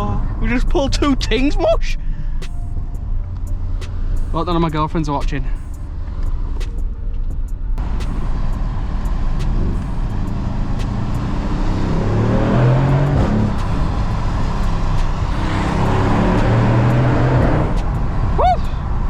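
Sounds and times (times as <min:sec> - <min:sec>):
car engine accelerating hard: 0:07.8 - 0:19.0.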